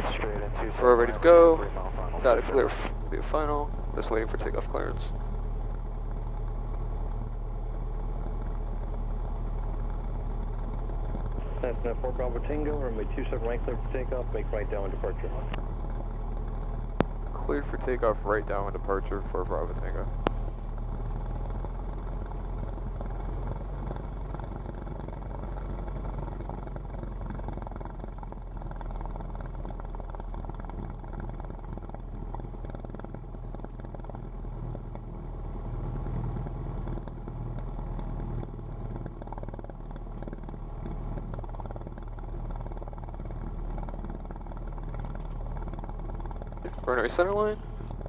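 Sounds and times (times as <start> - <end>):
piston aircraft engine running: 0.0 - 48.0.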